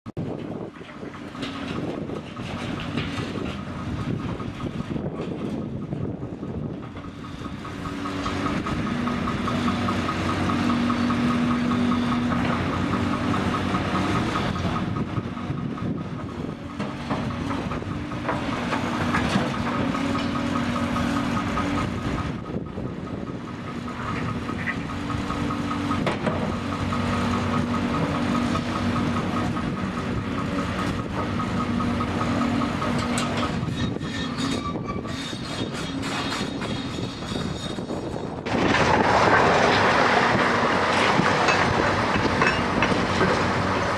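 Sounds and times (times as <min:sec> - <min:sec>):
excavator diesel engine: 0:00.1 - 0:43.9
metallic clatter: 0:32.9 - 0:43.7.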